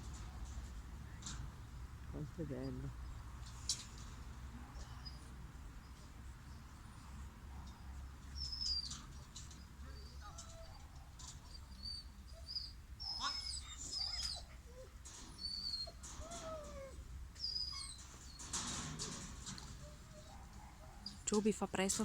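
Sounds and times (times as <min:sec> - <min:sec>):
small birds chirping: 0:02.1 - 0:03.8, 0:04.7 - 0:16.4, 0:17.4 - 0:18.6.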